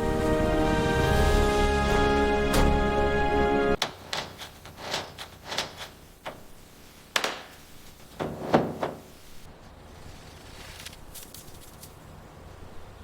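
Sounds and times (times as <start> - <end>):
knocks and clunks of hard parts: 3.8 - 9.2.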